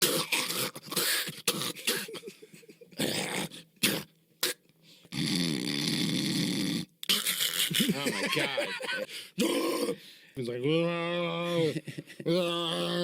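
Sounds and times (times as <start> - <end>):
man rasping growl: 10.7 - 13.0.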